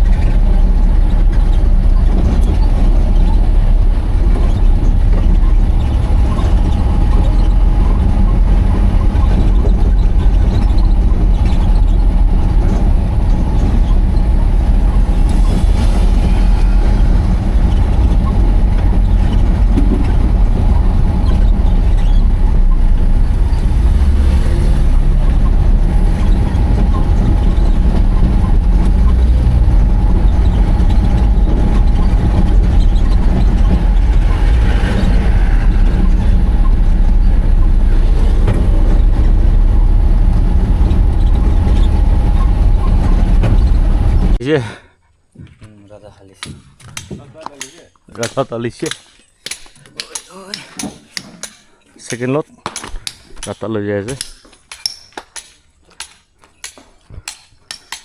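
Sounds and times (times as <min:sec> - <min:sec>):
diesel truck engine rumbling: 0:00.0 - 0:44.4.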